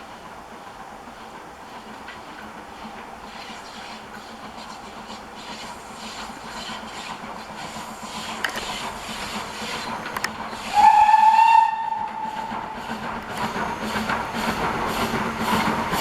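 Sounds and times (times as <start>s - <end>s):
steam train running: 0.0s - 16.0s
steam locomotive whistle blast: 10.5s - 15.1s.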